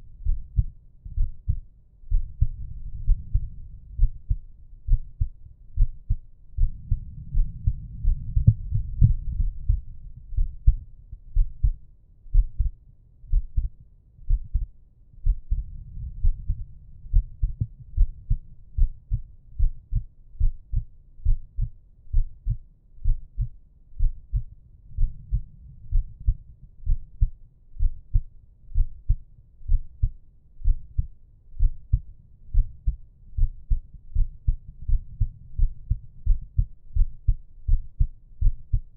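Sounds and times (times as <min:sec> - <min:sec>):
heartbeat thumps: 0:00.0 - 0:38.9
slow soft breathing: 0:06.6 - 0:10.1, 0:15.5 - 0:17.5.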